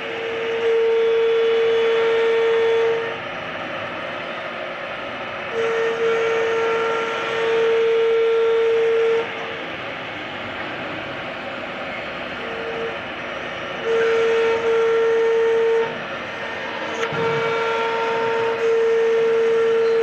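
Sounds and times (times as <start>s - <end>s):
loud steady whine: 0.0s - 20.0s
router machine rushing noise: 12.2s - 20.0s.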